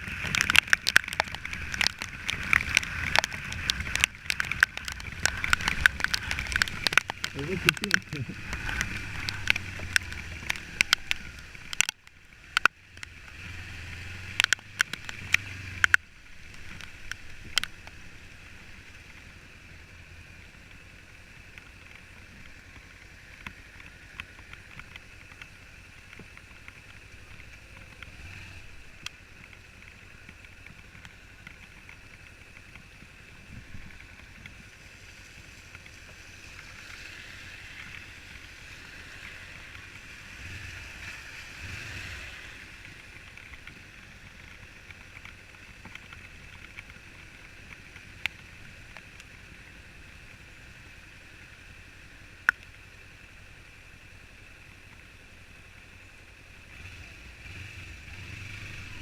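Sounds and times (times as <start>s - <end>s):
sharp clicks and knocks: 0.0s - 13.1s, 14.3s - 18.0s
road noise: 0.0s - 59.0s.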